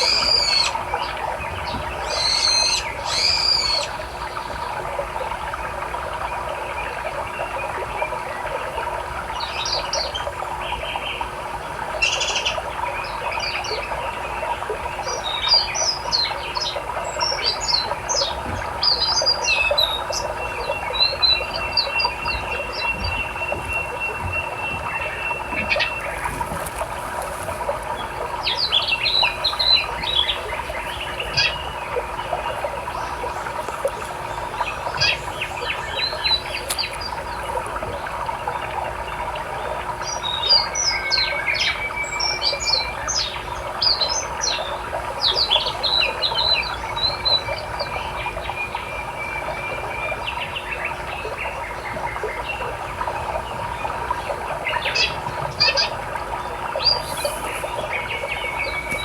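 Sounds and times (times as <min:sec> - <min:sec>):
small birds chirping: 0:00.0 - 0:04.6, 0:15.2 - 0:59.0
river water rushing: 0:21.0 - 0:38.9.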